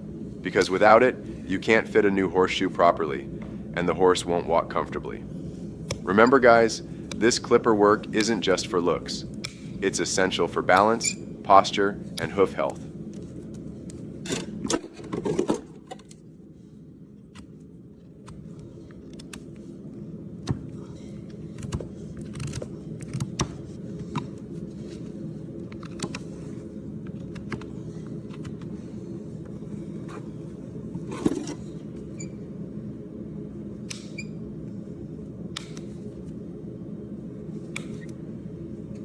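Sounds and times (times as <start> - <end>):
low hum: 0.0 - 39.0.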